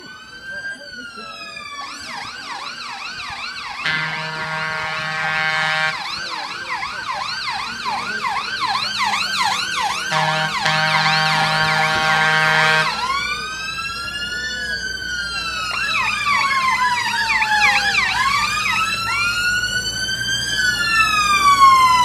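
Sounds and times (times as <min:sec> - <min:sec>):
fire engine siren: 0:00.0 - 0:22.0
steady horn tone: 0:03.8 - 0:06.0, 0:10.0 - 0:13.0.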